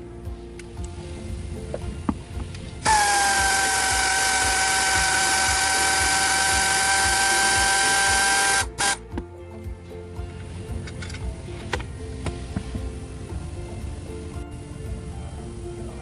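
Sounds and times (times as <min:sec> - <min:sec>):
power tool motor whirring: 0:02.8 - 0:09.0.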